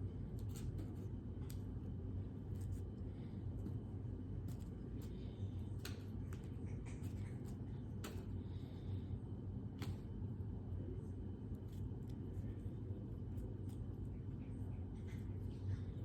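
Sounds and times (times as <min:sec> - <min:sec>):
low room hum: 0:00.0 - 0:16.0
cat playing clicks and scratches: 0:00.1 - 0:08.8.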